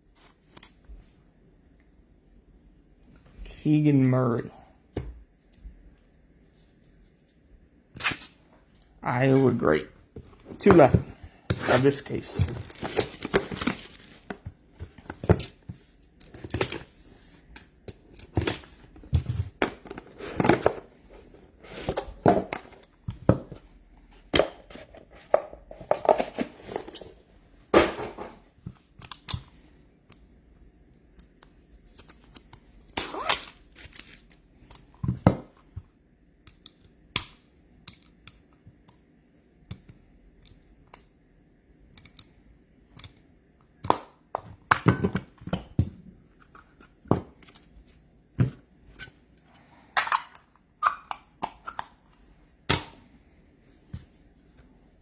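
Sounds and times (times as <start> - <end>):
packaging tearing and crinkling: 12.6 - 14.4.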